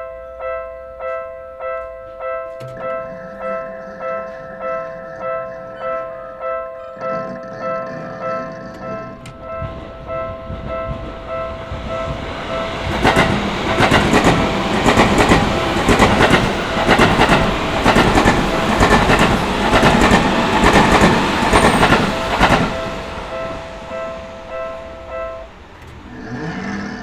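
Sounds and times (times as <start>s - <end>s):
level crossing warning bell: 0.0s - 26.1s
electric train passing: 0.0s - 27.0s
train wheels clattering: 7.1s - 26.6s.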